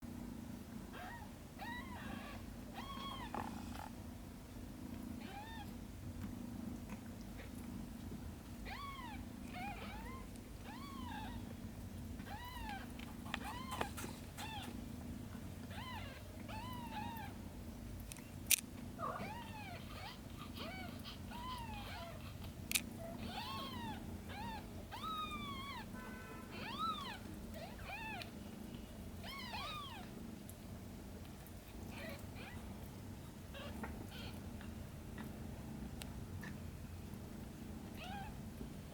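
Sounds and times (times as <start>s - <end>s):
kittens mewing: 12.2s - 14.8s.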